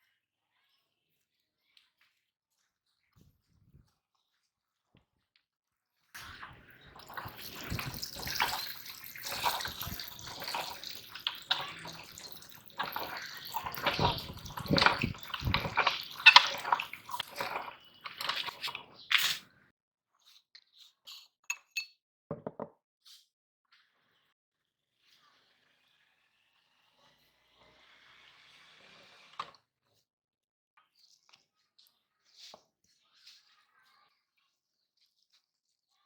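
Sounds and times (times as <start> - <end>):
meat grinder crushing water beads: 6.2 - 19.4.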